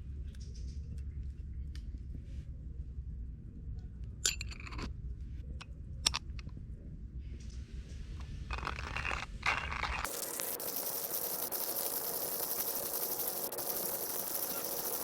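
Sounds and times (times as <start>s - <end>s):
coffee gear clicking and clattering: 8.5s - 15.0s.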